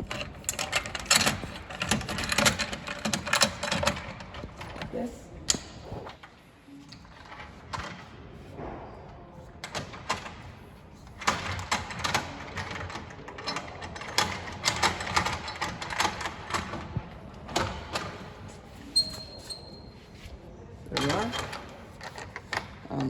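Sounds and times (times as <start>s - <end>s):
metal clicks and rattles of bike rack: 0.0s - 6.2s, 9.6s - 19.7s.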